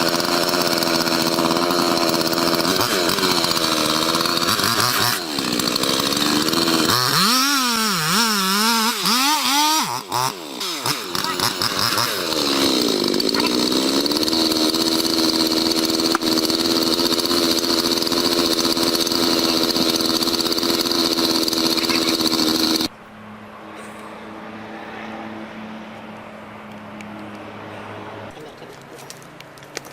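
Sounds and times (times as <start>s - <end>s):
chainsaw running: 0.0s - 22.9s.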